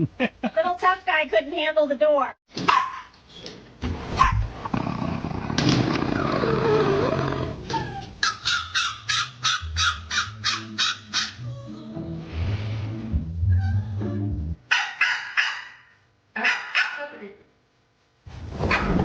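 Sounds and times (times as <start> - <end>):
dog barking: 2.6 - 3.1, 8.2 - 11.4, 14.7 - 17.1.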